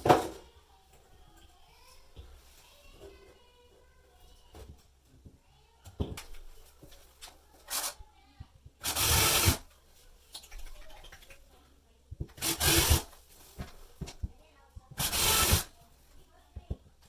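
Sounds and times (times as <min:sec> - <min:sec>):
harsh rasping bursts: 0:08.8 - 0:09.6, 0:12.4 - 0:13.2, 0:15.0 - 0:15.7.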